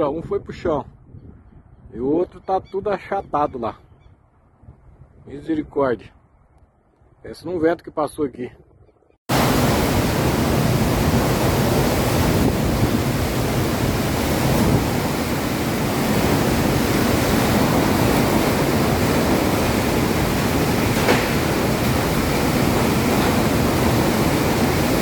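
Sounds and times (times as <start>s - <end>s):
strong wind: 0.0s - 7.2s, 8.6s - 25.0s
heavy rain: 9.3s - 25.0s.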